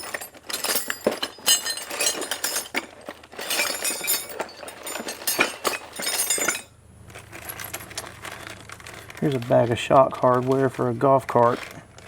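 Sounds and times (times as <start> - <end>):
metal hardware clinking: 0.0 - 6.7.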